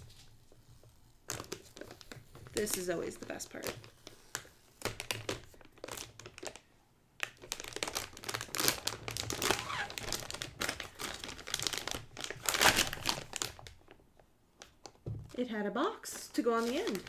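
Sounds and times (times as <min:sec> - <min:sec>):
plastic bag crinkling: 0:01.2 - 0:14.0, 0:16.0 - 0:17.0.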